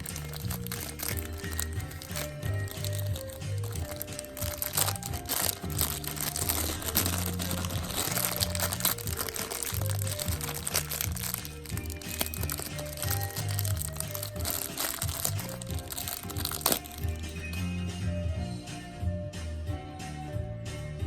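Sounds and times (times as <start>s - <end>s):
plastic packaging crinkling: 0.0s - 17.8s
background music with bass: 0.0s - 21.0s.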